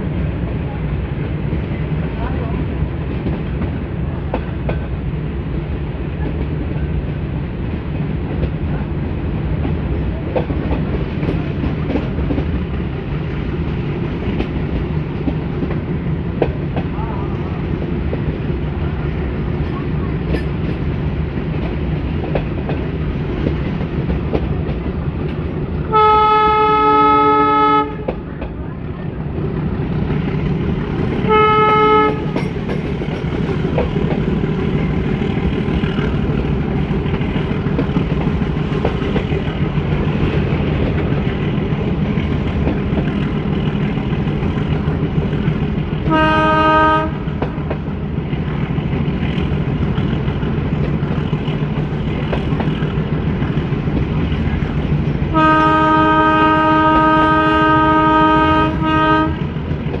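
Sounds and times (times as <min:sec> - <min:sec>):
moving train rumble: 0:00.0 - 1:00.0
locomotive horn blasts: 0:25.9 - 0:28.1, 0:31.3 - 0:32.4, 0:46.0 - 0:47.3, 0:55.3 - 0:59.6.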